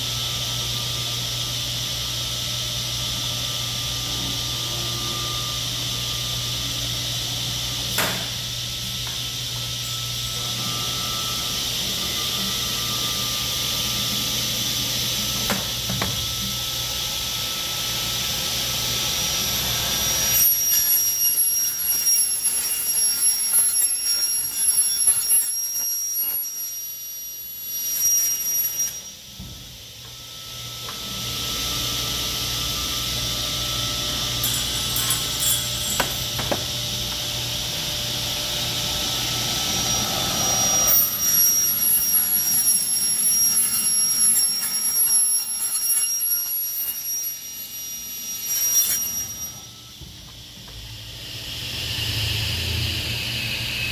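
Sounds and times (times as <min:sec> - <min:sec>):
cutting saw running: 0:00.0 - 0:50.0
blade squealing through metal: 0:19.7 - 0:29.3, 0:39.3 - 0:50.0.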